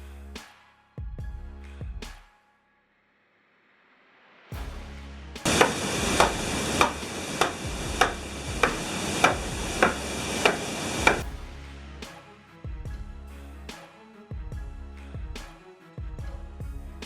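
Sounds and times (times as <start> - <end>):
sawmill low hum: 5.4 - 11.2
sharp regular knock: 5.4 - 11.3
saw rasping through timber: 5.4 - 11.4.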